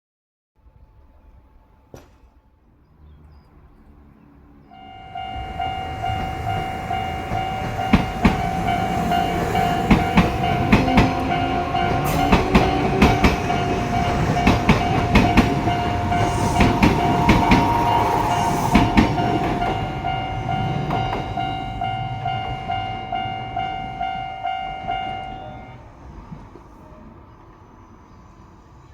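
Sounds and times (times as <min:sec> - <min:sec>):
level-crossing alarm tone: 0:04.8 - 0:25.9
train wheels clattering: 0:05.4 - 0:23.6.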